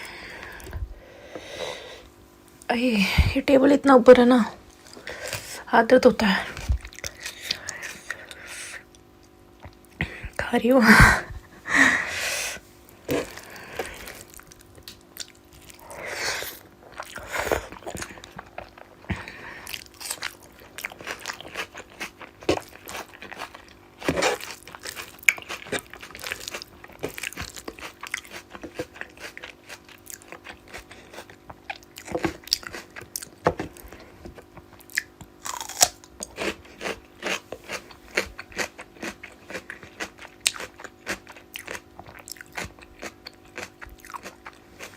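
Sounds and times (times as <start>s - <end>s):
chewing and crunching food: 4.7s - 10.3s, 12.9s - 44.9s.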